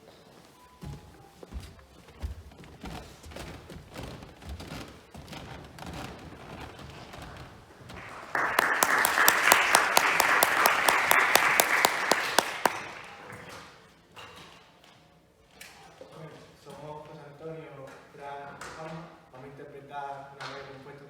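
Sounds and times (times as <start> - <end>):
audience applause: 7.9 - 13.7.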